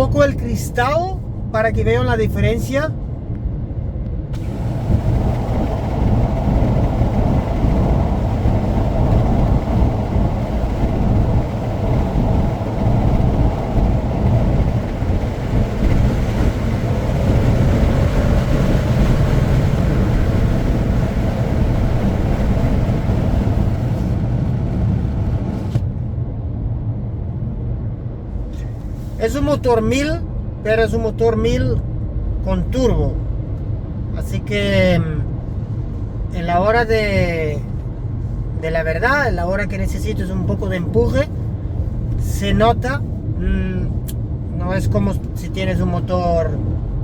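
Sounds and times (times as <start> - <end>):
wind rushing through window: 0.0 - 47.0
engine and tyre drone: 2.9 - 29.1.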